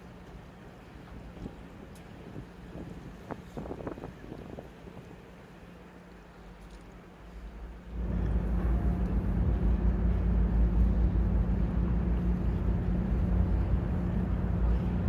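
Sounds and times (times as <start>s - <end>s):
water noise: 0.0s - 15.0s
wind noise: 1.3s - 5.2s
boat engine drone: 4.1s - 15.0s.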